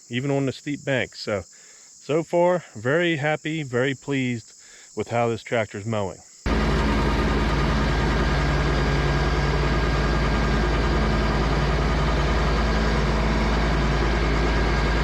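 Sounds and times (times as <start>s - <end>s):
tractor diesel engine running: 6.5s - 15.0s.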